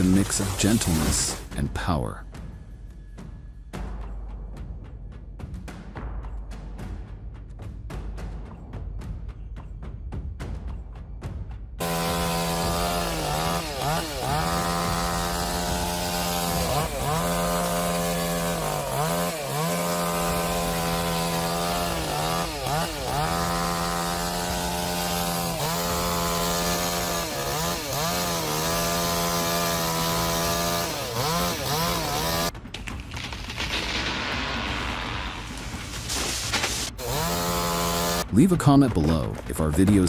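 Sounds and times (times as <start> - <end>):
chainsaw running at high revs: 11.8 - 32.5, 36.9 - 38.3.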